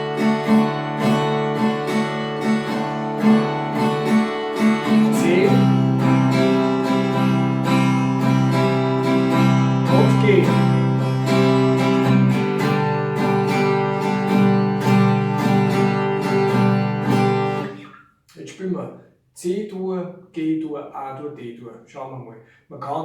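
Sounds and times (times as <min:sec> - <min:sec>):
acoustic guitar picking and strumming: 0:00.0 - 0:18.0.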